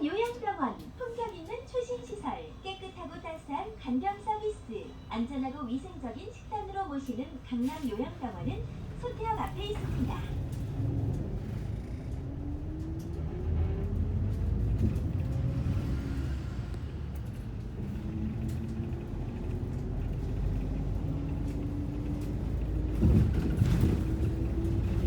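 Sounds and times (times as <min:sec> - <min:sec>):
bus engine rumble: 0:00.0 - 0:25.0
drivetrain whine: 0:08.4 - 0:23.6.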